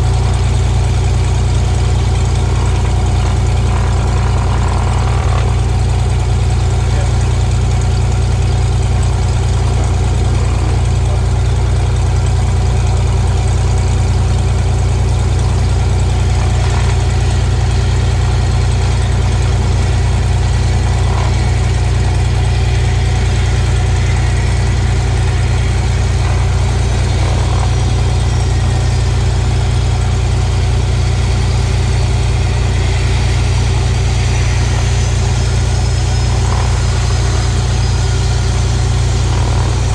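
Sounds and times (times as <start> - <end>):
propeller aircraft engine drone: 0.0 - 39.9.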